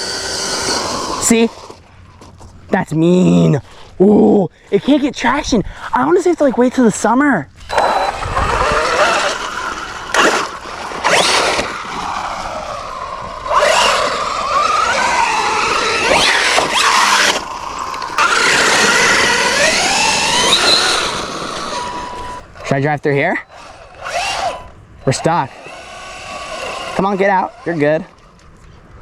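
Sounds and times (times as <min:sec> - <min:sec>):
electric motor whining: 0:00.0 - 0:02.5, 0:07.6 - 0:22.7, 0:23.4 - 0:28.8
tyres on dirt and gravel: 0:00.0 - 0:29.0.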